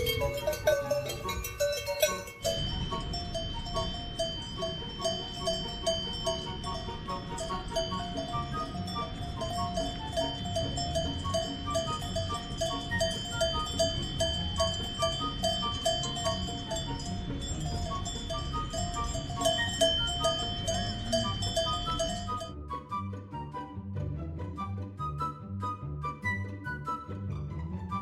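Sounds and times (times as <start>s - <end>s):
cowbells clinking: 0.0s - 22.5s
high-pitched drone: 0.0s - 22.5s.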